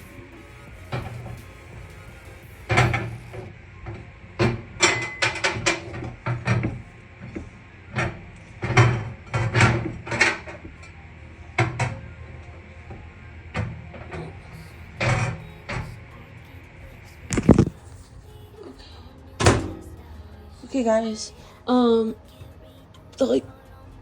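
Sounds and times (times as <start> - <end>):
microwave knocking and scraping: 0.1 - 10.7.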